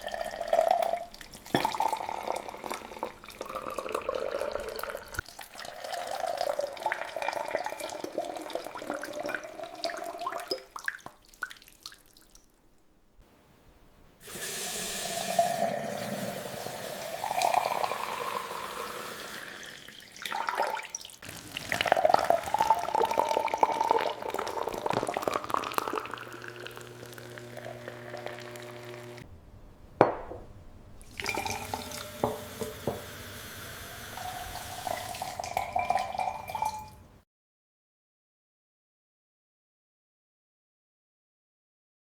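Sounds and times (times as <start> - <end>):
liquid running and splashing: 19.6 - 29.2.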